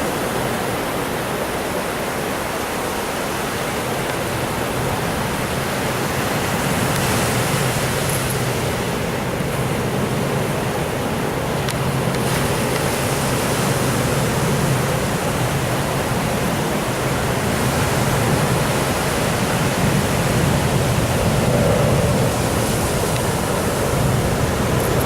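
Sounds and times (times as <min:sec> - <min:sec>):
surf breaking on beach: 0:02.1 - 0:25.0.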